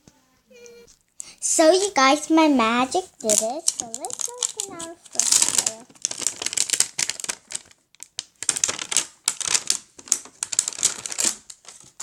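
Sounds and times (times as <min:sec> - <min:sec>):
toy package wrapping tearing: 0:02.9 - 0:12.0.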